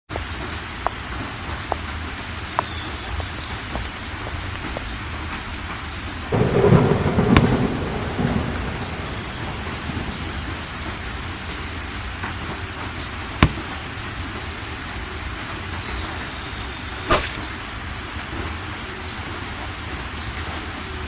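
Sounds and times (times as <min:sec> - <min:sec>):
steady rain: 0:00.1 - 0:21.0
thunder rumble and crack: 0:05.3 - 0:13.8.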